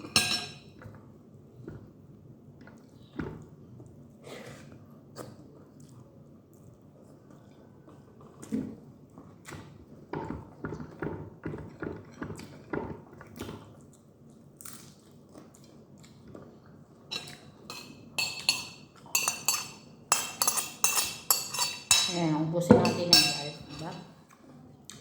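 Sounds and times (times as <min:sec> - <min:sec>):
tableware clinking against dish: 0:00.0 - 0:00.9, 0:17.1 - 0:24.1.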